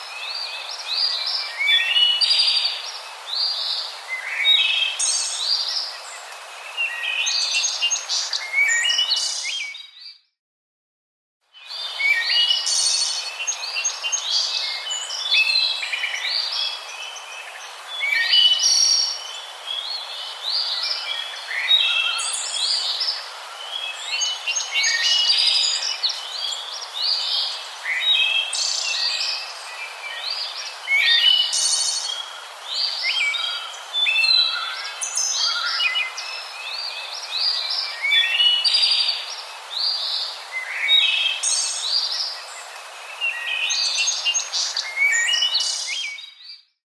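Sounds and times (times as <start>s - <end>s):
small birds chirping: 11.5s - 46.7s.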